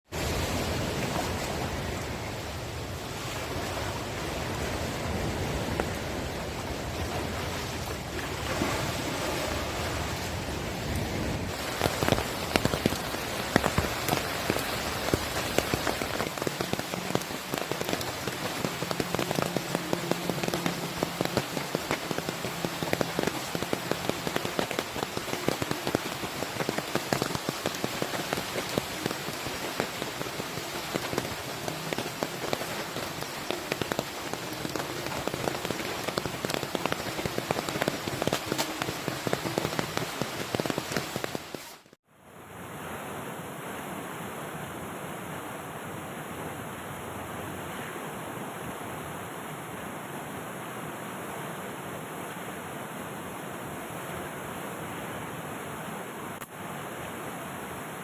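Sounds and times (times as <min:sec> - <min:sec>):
heavy rain hissing: 0:00.1 - 0:41.9
raindrops pattering on surface: 0:10.9 - 0:42.0.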